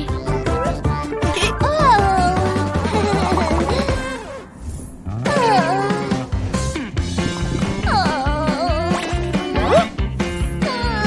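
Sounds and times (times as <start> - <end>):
rising pitched swoop: 4.1 - 5.4.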